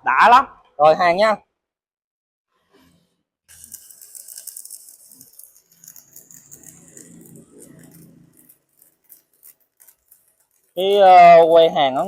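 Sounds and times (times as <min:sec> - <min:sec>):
welding arc crackling: 0:03.5 - 0:12.0.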